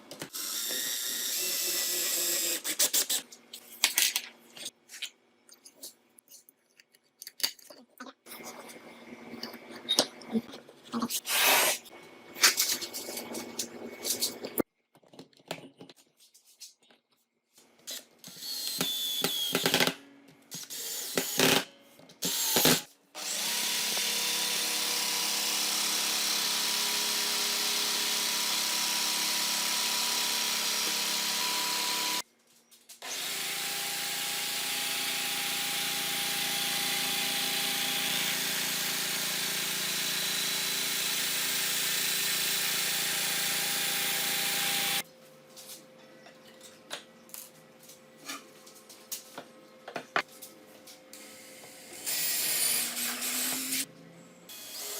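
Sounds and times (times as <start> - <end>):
electric drill motor running: 0.3 - 2.8, 22.2 - 32.2, 33.0 - 45.0, 52.0 - 53.8.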